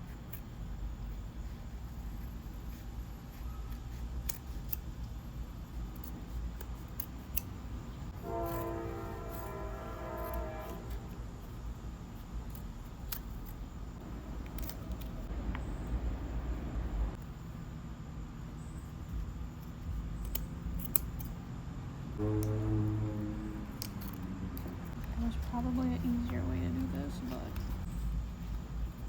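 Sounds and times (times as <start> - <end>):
horn sounding: 8.2 - 11.2, 22.2 - 24.6
small clicks and handling noises: 10.3 - 13.7, 19.1 - 21.5
low rumble: 14.0 - 17.2, 22.2 - 28.0.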